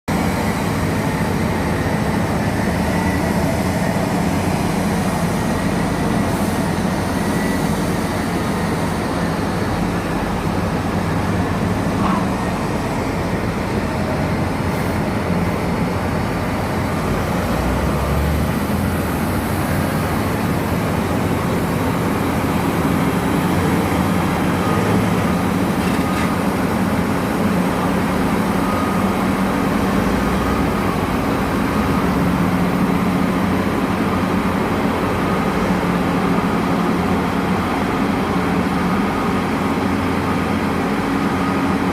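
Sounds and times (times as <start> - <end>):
diesel engines droning: 0.1 - 41.9.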